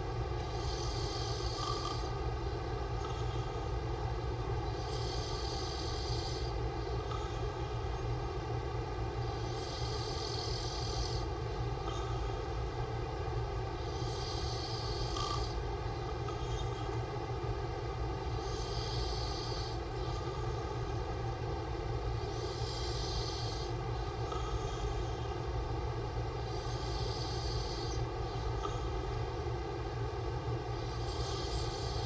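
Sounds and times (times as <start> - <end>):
steady low hum: 0.0 - 32.0
man snoring: 0.4 - 2.3, 3.0 - 3.8, 4.7 - 7.9, 9.3 - 12.5, 13.8 - 17.0, 18.2 - 20.9, 22.2 - 25.4, 26.4 - 28.0, 28.6 - 29.0, 30.8 - 32.0.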